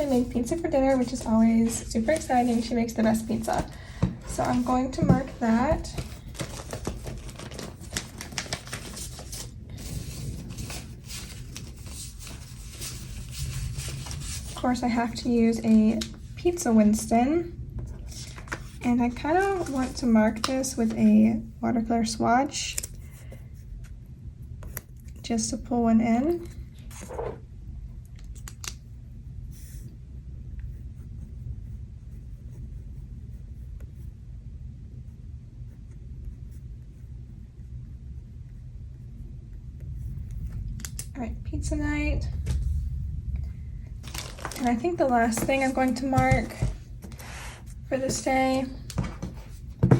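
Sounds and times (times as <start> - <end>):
steady low rumble: 0.0 - 49.9
paper rustling and tapping: 3.3 - 9.5, 18.1 - 21.1, 44.0 - 47.4, 48.0 - 49.9
thunderstorm rumble: 8.5 - 17.9, 39.8 - 47.0.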